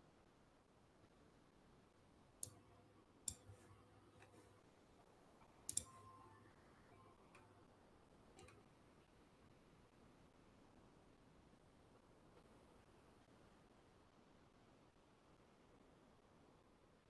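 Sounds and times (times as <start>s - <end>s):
faint sharp clicks: 2.4s - 2.6s, 5.7s - 5.9s.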